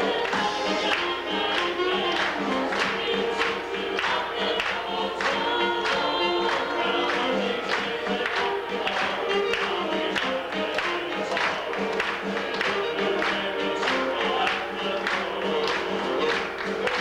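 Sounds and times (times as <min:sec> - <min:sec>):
gospel group singing in harmony: 0:00.0 - 0:17.0
instrumental accompaniment with beat: 0:00.0 - 0:17.0.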